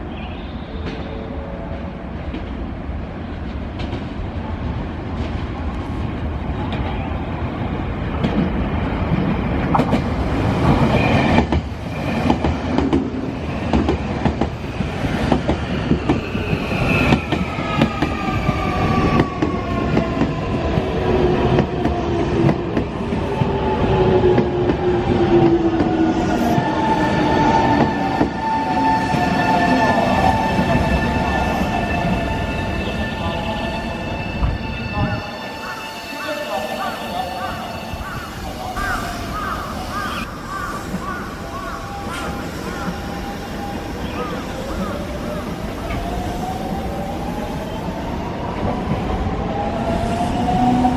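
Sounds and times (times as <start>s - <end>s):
train wheels clacking on rails: 8.1s - 32.2s.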